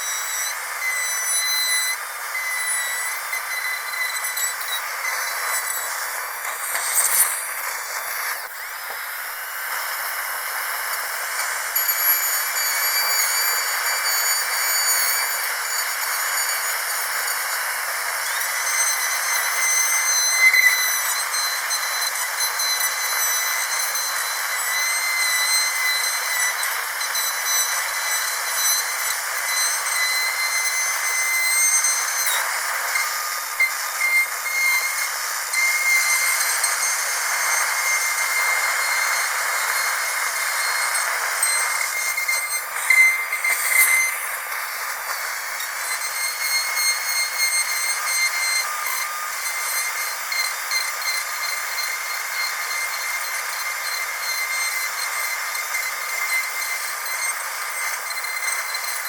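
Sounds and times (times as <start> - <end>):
dental drill whining: 0.0 - 59.0.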